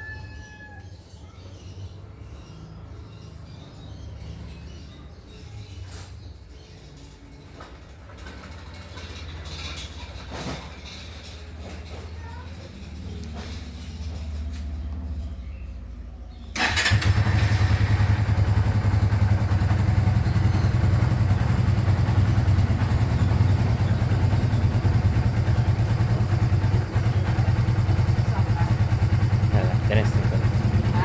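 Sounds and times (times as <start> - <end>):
motorcycle engine starting and idling: 7.4 - 31.0.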